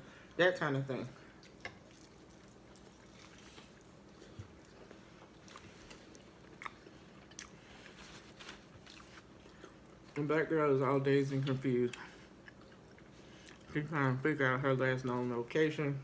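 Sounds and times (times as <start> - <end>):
quiet chewing: 1.2 - 10.2, 11.3 - 13.8.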